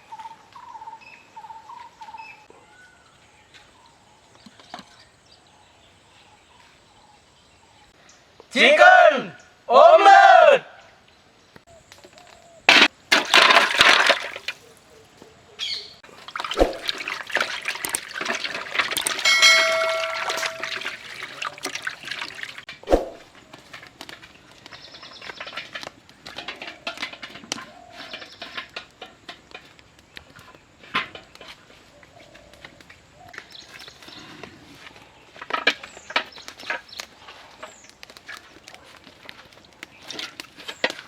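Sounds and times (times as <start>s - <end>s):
liquid noise: 16.0s - 23.2s
utensils clattering: 16.1s - 22.6s, 25.0s - 29.7s.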